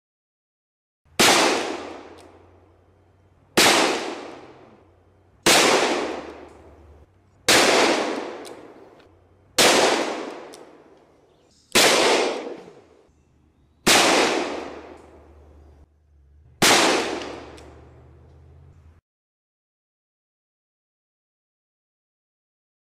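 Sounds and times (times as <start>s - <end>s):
pistol shots: 1.1s - 2.5s, 3.6s - 4.8s, 5.4s - 9.0s, 9.6s - 11.0s, 11.7s - 12.9s, 13.8s - 15.4s, 16.6s - 17.9s.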